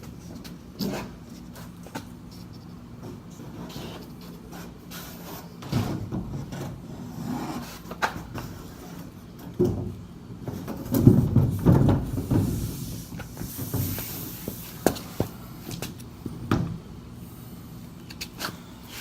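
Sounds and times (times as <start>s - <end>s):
wooden boards knocking and thudding: 10.7s - 12.6s.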